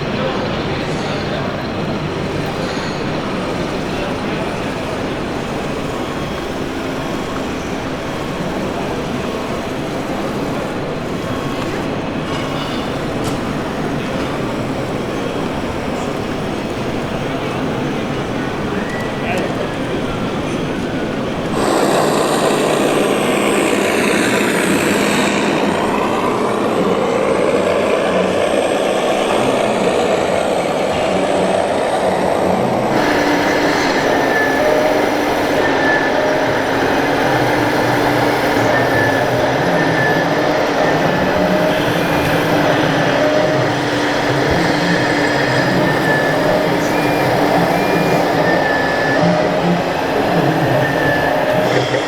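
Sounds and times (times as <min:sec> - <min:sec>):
model truck engine: 0:00.0 - 0:52.0
steady dense noise: 0:00.0 - 0:52.0.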